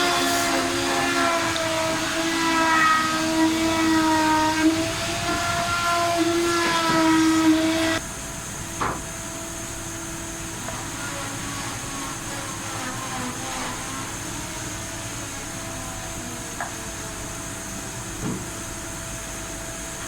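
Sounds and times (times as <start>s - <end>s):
machine whining: 0.0s - 8.0s.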